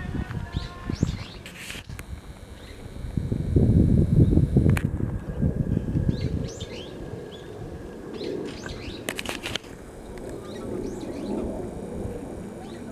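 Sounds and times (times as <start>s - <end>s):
low rumbling noise: 0.0s - 12.9s
small birds chirping: 0.4s - 4.6s, 6.0s - 9.2s, 10.0s - 12.9s
sharp clicks: 1.0s - 4.9s, 8.5s - 12.9s.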